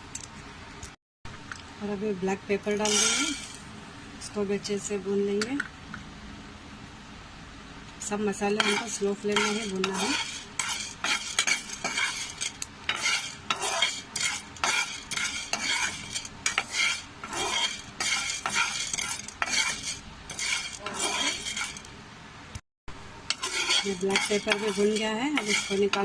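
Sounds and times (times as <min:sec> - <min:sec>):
spatula scraping peppercorns in pan: 0:02.7 - 0:03.6, 0:08.4 - 0:21.9, 0:23.3 - 0:26.0.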